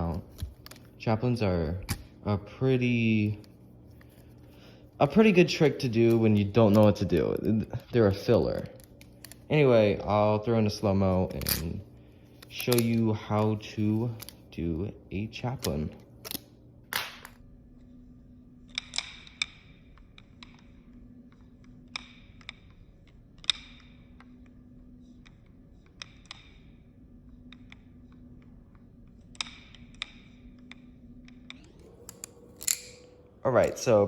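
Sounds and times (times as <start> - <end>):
butterfly knife metallic clicks: 29.3 - 33.2.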